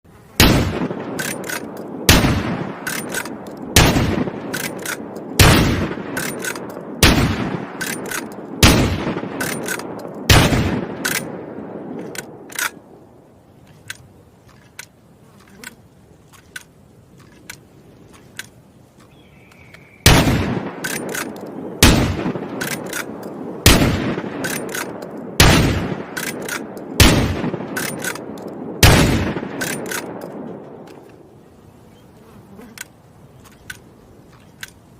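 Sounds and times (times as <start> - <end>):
shotgun shots: 0.4 - 12.8, 20.0 - 30.6
faint clicks: 13.6 - 20.0, 32.6 - 34.9.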